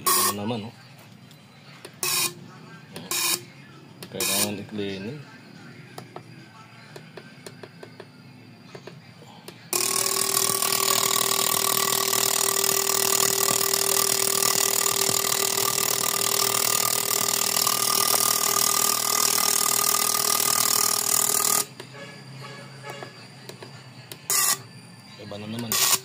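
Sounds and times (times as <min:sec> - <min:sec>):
machine running with hiss and hum: 0:08.7 - 0:25.1.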